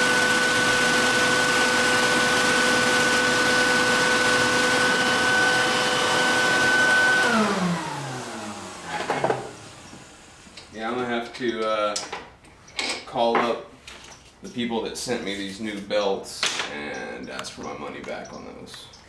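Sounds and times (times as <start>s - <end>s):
belt sharpener motor whine: 0.0s - 10.2s.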